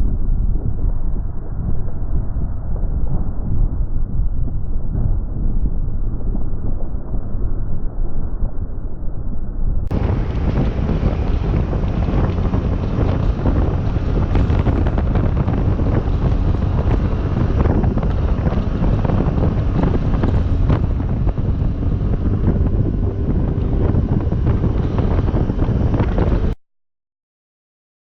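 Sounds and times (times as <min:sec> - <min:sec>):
wind buffeting microphone: 0:00.0 - 0:26.6
scooter running noise: 0:09.9 - 0:26.6.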